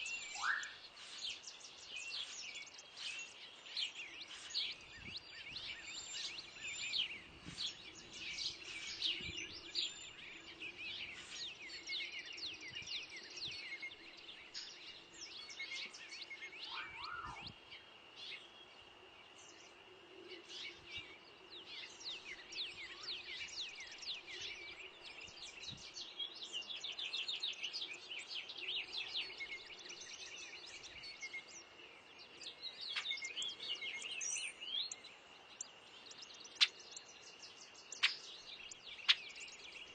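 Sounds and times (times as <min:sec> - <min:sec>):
lower bird call: 0:00.0 - 0:01.4, 0:16.6 - 0:17.6
songbirds chirping: 0:00.0 - 0:39.9.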